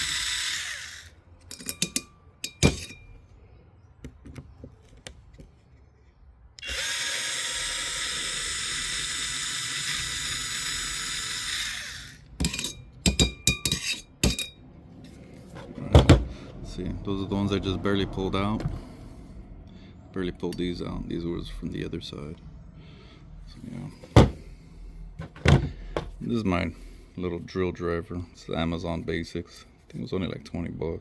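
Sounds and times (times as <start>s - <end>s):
cordless drill running: 0.0s - 1.2s, 6.6s - 12.6s
metal clicks of bolts: 1.5s - 3.0s.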